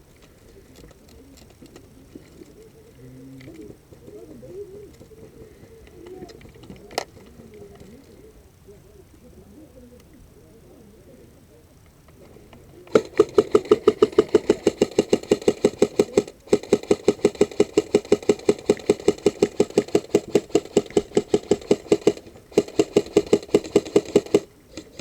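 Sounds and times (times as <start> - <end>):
airsoft gun firing full auto: 12.9 - 25.0.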